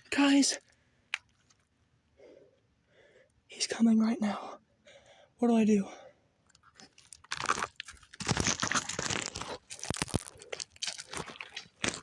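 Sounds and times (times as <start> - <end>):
close rustling and crunching: 6.5 - 12.0.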